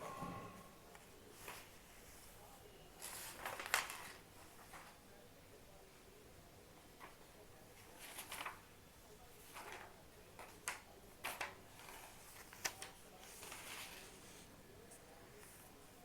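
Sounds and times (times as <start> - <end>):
paper rustling: 3.0 - 5.0, 7.8 - 8.6, 9.4 - 14.5.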